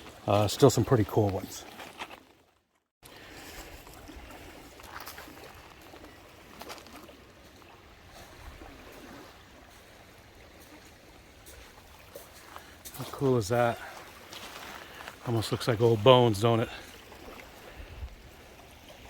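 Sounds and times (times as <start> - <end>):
small waves washing on stones: 3.0 - 19.0.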